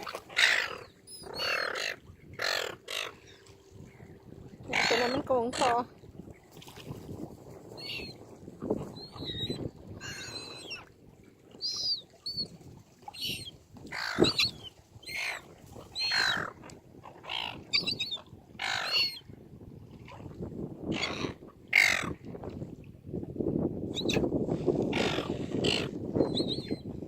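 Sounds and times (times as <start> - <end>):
seagulls squawking: 0.0 - 3.3, 4.7 - 5.8, 13.2 - 15.4.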